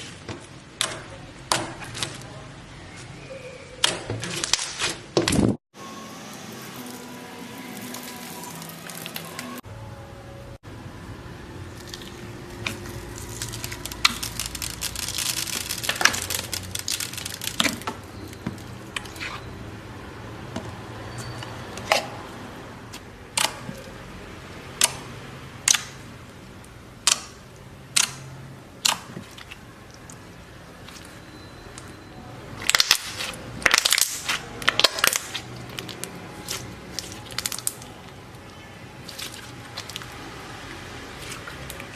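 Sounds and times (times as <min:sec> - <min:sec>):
slime squishing and crackling: 0:11.7 - 0:19.4, 0:32.5 - 0:41.9.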